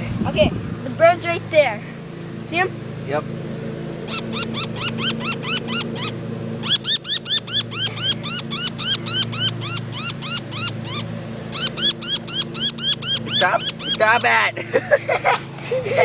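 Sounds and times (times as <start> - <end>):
low engine hum: 0.0 - 16.0
small bird high chirps: 4.0 - 14.4.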